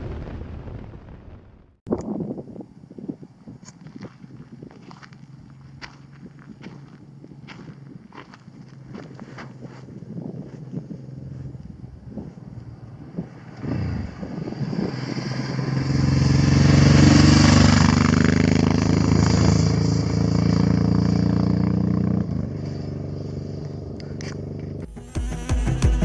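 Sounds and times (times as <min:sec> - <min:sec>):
motorcycle riding by: 0:05.5 - 0:26.0.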